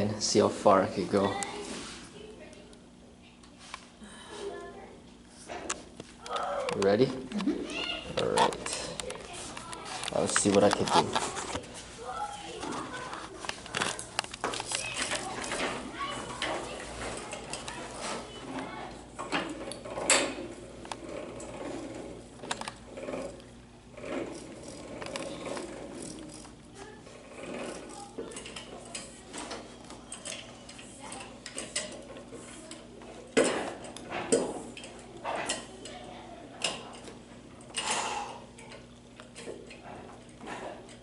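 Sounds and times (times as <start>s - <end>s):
mechanical clicking and ratcheting: 19.2s - 26.6s.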